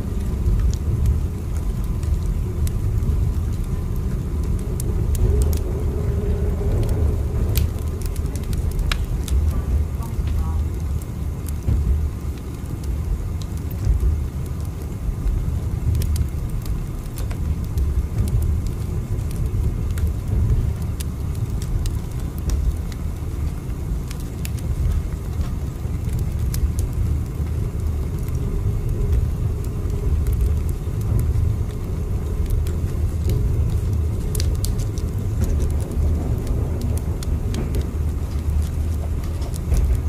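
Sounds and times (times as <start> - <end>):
train rumbling: 0.0 - 40.0.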